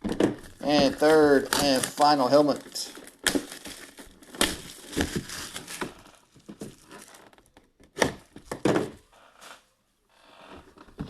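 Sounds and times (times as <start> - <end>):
packaging crinkling and tearing: 0.4 - 7.5.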